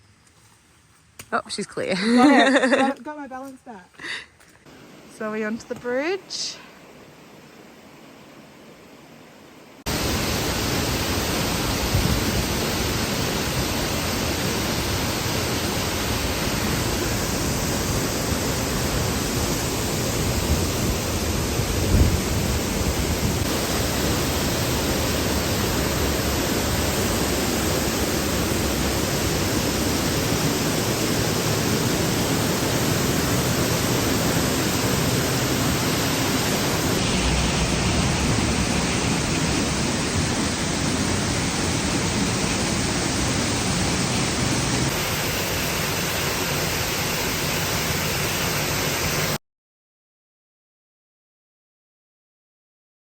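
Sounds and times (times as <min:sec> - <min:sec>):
waterfall rushing: 0:09.8 - 0:49.4
low bumps: 0:36.5 - 0:44.9.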